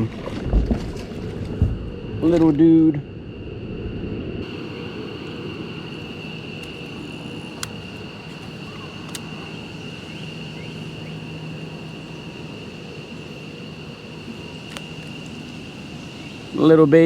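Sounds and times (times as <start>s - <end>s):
insects droning: 0.0s - 17.0s
low rumbling noise: 0.0s - 17.0s
small clicks: 7.6s - 9.4s.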